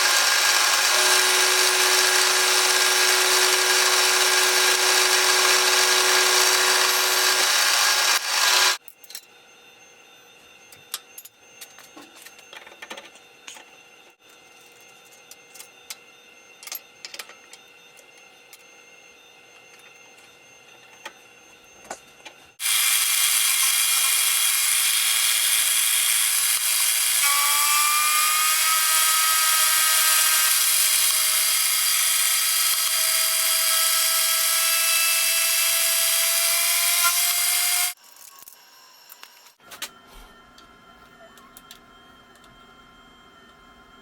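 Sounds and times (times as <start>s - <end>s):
power tool whining: 0.0s - 8.8s, 22.6s - 39.6s.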